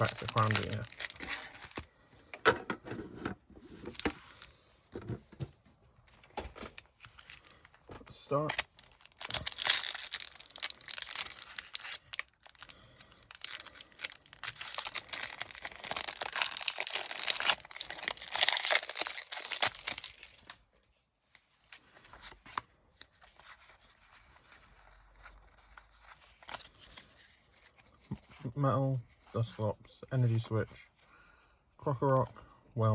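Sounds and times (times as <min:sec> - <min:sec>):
foil wrapper tearing and crinkling: 0:00.0 - 0:01.8, 0:07.2 - 0:20.6
cards rustling and clicking: 0:00.0 - 0:02.4, 0:03.6 - 0:04.5, 0:06.1 - 0:28.4.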